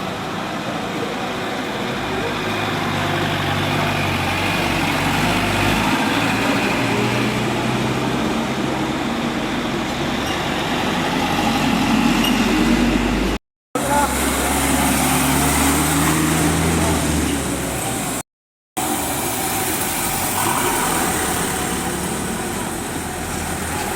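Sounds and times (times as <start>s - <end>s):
vehicle engine noise: 0.0s - 18.2s, 18.8s - 23.9s
voices: 12.9s - 18.2s.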